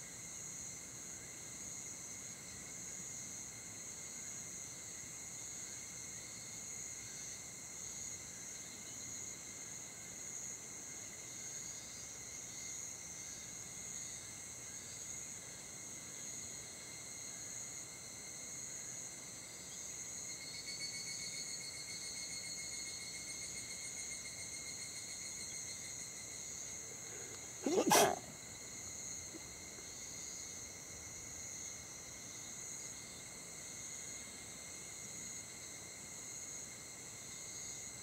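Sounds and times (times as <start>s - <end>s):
insects trilling: 4.2s - 34.4s.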